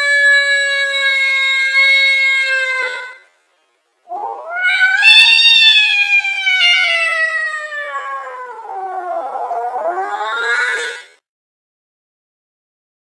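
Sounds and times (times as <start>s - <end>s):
angry cat yowling: 0.0s - 3.2s, 4.1s - 11.2s.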